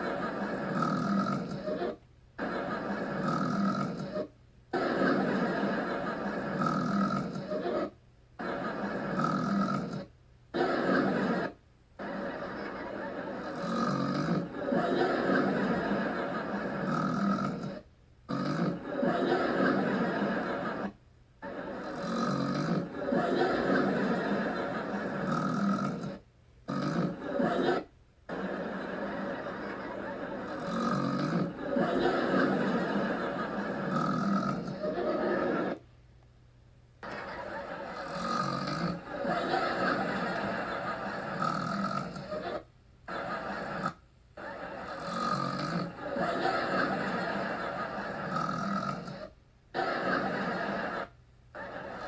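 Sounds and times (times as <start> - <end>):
woman snoring loudly: 0.7 - 1.9, 3.2 - 4.3, 6.6 - 7.7, 9.1 - 10.1, 13.5 - 15.9, 16.8 - 18.8, 21.8 - 23.9, 25.2 - 27.2, 30.5 - 32.5, 33.9 - 34.9, 38.0 - 40.0, 41.3 - 42.4, 44.9 - 46.9, 48.3 - 49.3.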